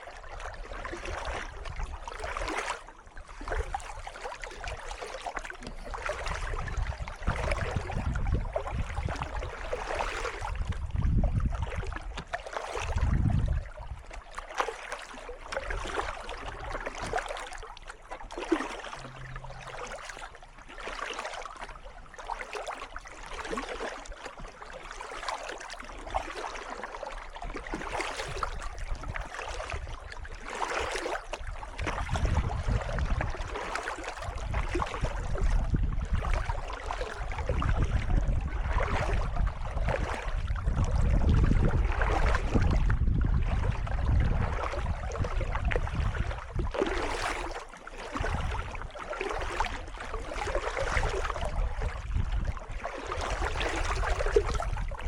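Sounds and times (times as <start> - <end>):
paddle strokes splashing: 0.0 - 55.0
low rumbles: 18.9 - 20.6.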